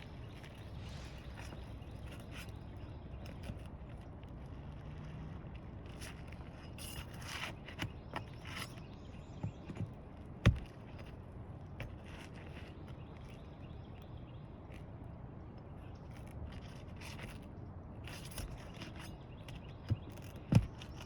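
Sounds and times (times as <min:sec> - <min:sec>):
low rumble: 0:00.0 - 0:02.9.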